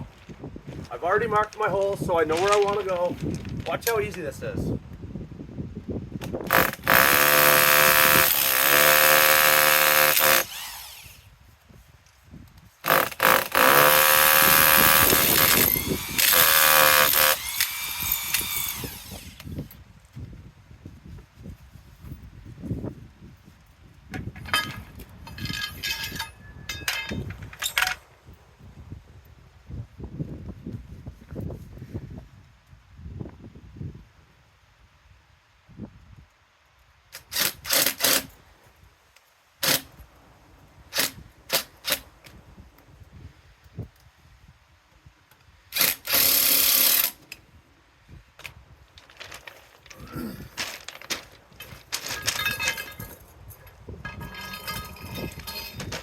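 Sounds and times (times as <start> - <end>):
hammer drill running: 6.5 - 11.2, 12.9 - 19.5
small metal hardware clinking: 24.4 - 28.1, 50.6 - 56.0
small knocks and rattles: 48.4 - 56.0.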